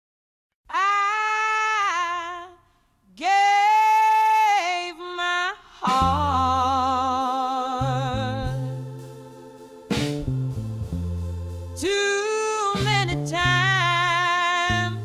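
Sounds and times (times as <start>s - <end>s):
woman singing wordless notes: 0.7s - 8.7s, 11.8s - 15.0s
blues band with bass: 9.9s - 11.9s, 12.8s - 14.1s.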